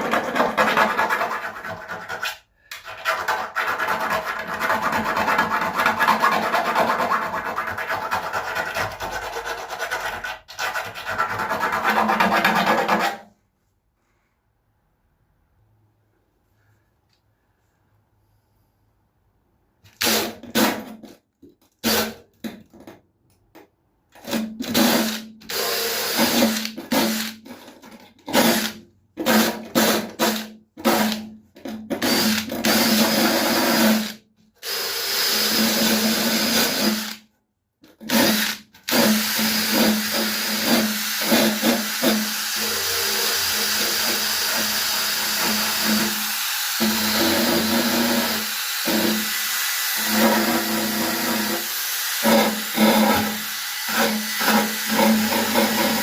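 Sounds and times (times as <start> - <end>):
wire brush drill scouring metal: 38.1 - 56.0.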